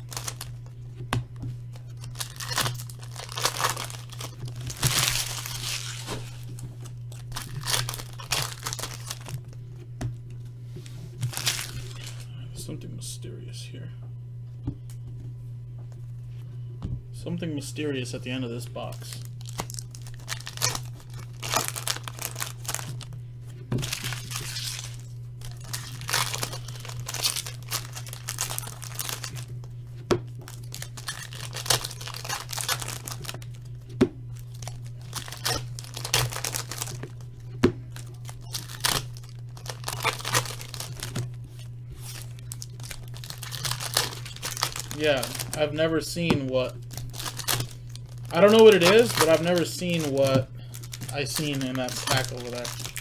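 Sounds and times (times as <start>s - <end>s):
wrappers tearing and crinkling: 0.0s - 0.6s, 1.7s - 9.6s, 11.2s - 12.3s, 18.2s - 23.2s, 23.8s - 29.6s, 30.3s - 33.7s, 34.3s - 37.3s, 37.9s - 53.0s.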